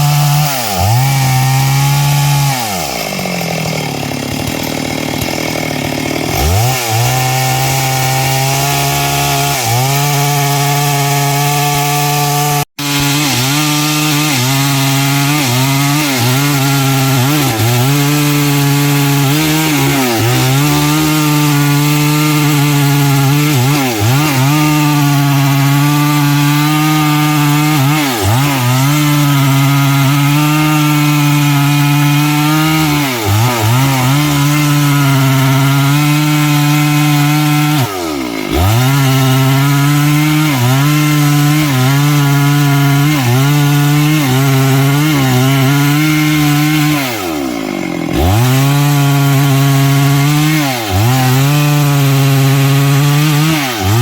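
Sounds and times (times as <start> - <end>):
chainsaw cutting wood: 0.0 - 54.0.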